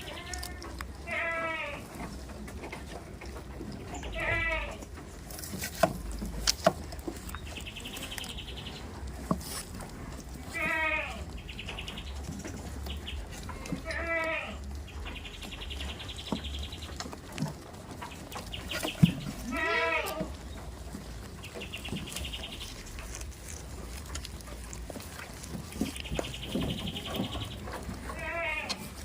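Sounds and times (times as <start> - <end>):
goats bleating: 0.0 - 2.0, 4.0 - 4.9, 10.4 - 11.4, 13.4 - 14.8, 18.9 - 20.4, 26.9 - 29.0.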